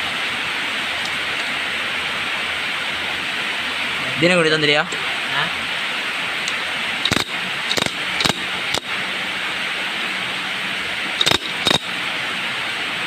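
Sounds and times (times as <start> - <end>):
steady hiss: 0.0 - 13.0
sharp clicks and knocks: 6.5 - 8.9, 11.2 - 11.9.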